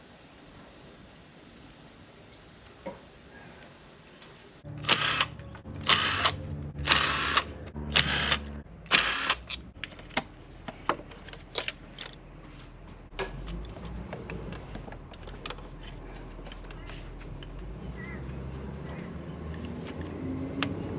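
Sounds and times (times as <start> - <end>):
cordless power driver whirring: 4.8 - 9.6
tools and metal parts clicking: 10.9 - 12.2.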